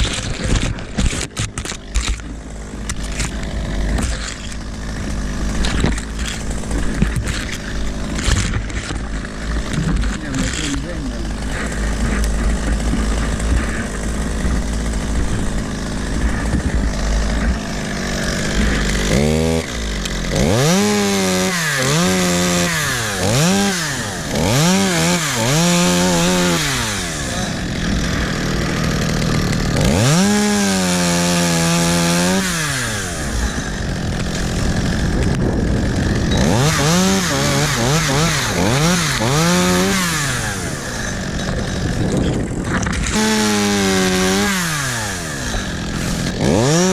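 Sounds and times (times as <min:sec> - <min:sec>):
chainsaw revving while cutting wood: 0:00.0 - 0:46.9
wind rumble on microphone: 0:11.9 - 0:17.7, 0:34.5 - 0:36.5, 0:41.6 - 0:43.2.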